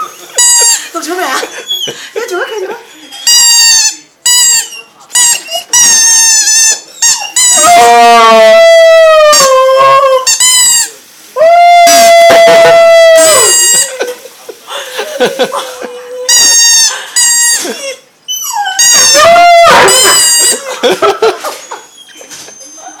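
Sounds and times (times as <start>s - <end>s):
dog howling: 7.5s - 10.3s, 11.4s - 14.0s, 18.3s - 20.5s.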